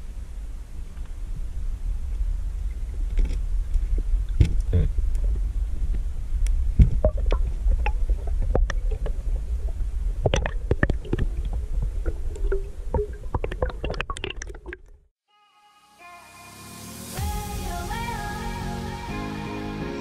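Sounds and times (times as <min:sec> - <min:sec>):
underwater low rumble: 0:00.0 - 0:15.1.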